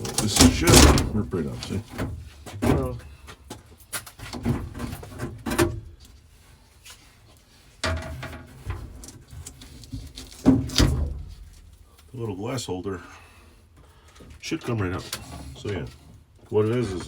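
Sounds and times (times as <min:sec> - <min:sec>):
metal frame knocking and clattering: 0:00.0 - 0:01.2
scraping and handling noise: 0:00.0 - 0:12.2.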